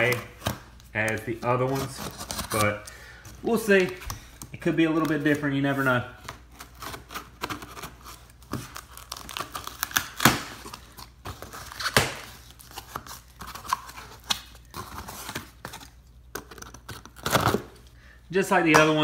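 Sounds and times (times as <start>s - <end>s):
cardboard tearing and crinkling: 1.0s - 2.8s, 5.2s - 17.8s
sharp cardboard rips: 6.5s - 15.8s.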